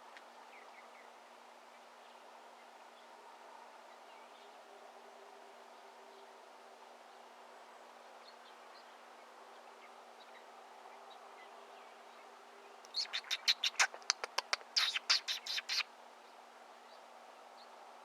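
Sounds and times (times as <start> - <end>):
bird chipping call: 12.9 - 15.8.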